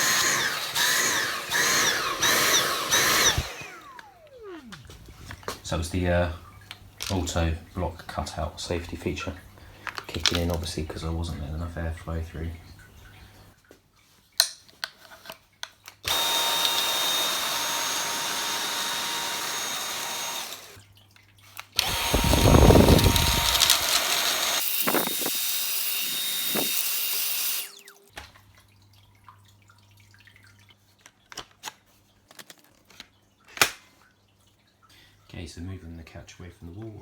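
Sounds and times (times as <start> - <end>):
vacuum motor whining: 0.0 - 6.0, 16.1 - 20.8, 21.8 - 28.0
small clicks: 21.6 - 25.1.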